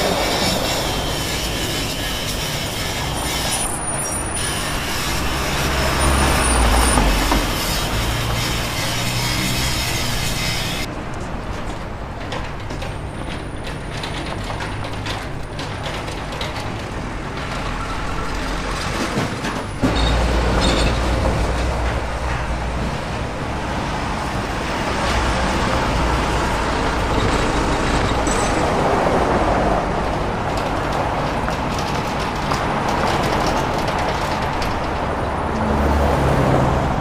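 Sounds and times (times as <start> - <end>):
knocks and clatter: 11.2 - 23.5, 29.9 - 35.8.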